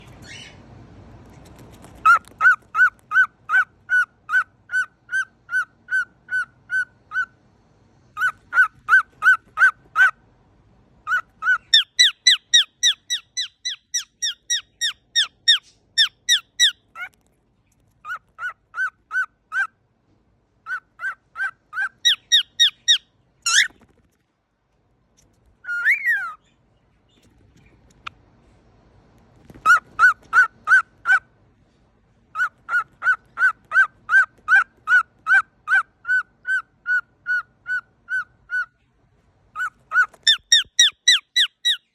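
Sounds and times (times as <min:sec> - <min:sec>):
cockatiel honking and squeaking: 0:01.4 - 0:07.4, 0:08.1 - 0:10.2, 0:11.0 - 0:17.2, 0:17.9 - 0:19.8, 0:20.6 - 0:23.9, 0:25.6 - 0:26.5, 0:29.4 - 0:31.4, 0:32.3 - 0:38.8, 0:39.5 - 0:41.9.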